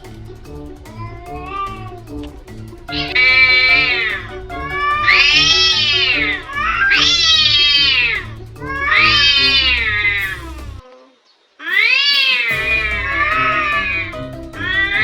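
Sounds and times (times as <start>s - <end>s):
background music: 0.0s - 10.8s, 12.5s - 15.0s
cat yowling: 3.0s - 10.2s.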